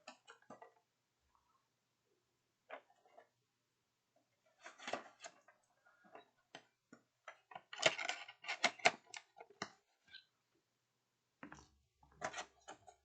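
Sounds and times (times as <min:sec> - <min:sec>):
plastic pieces clicking and clattering: 0:07.4 - 0:09.7.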